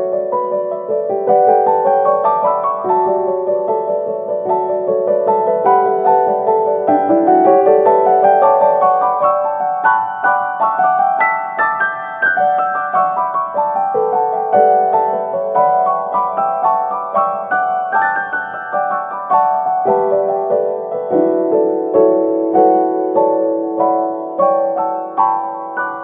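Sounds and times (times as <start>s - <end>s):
piano melody: 0.0s - 26.0s.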